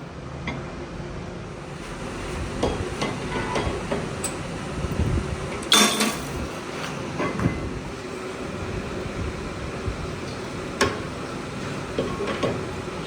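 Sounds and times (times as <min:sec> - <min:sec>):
loud ringing metal clank: 0:05.7 - 0:06.3.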